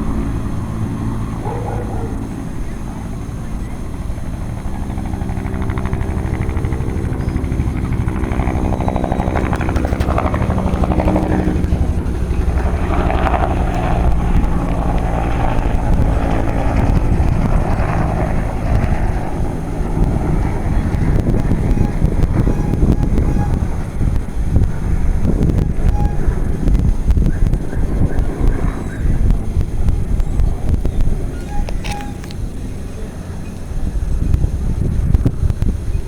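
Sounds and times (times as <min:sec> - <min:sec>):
steady tones: 0:00.0 - 0:27.1
helicopter rotor and engine: 0:00.0 - 0:36.0.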